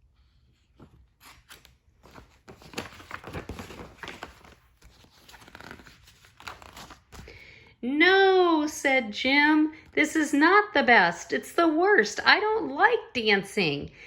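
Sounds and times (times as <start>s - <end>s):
book pages rustling and turning: 0.5s - 7.4s.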